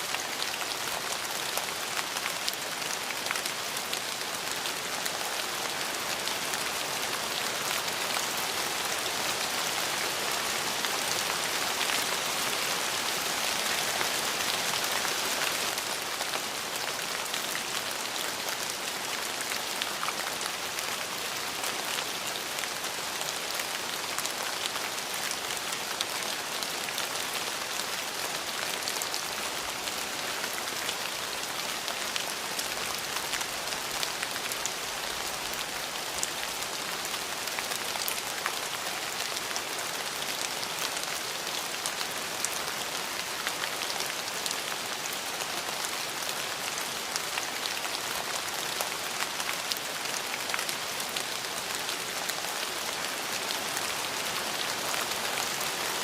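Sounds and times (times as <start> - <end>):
steady rain pattering: 0.0 - 56.0.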